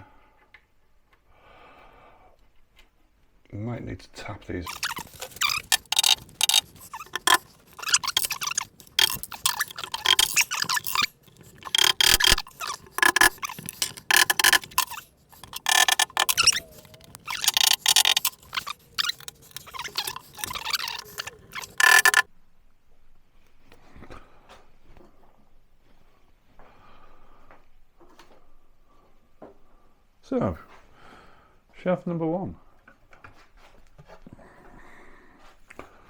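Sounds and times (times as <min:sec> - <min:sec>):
sharp metallic clicks: 0:04.7 - 0:22.2.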